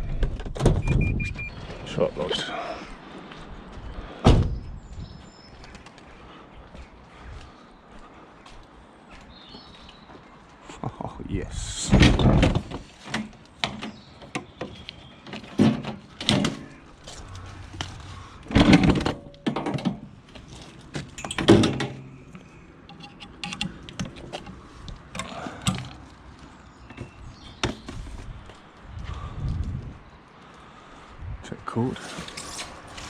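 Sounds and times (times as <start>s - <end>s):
heavy thuds: 4.2s - 4.7s
objects knocking and clattering: 20.9s - 22.2s.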